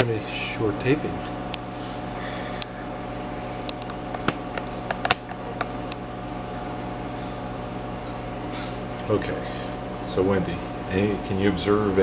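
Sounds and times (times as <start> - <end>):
microwave oven humming: 0.0 - 12.0.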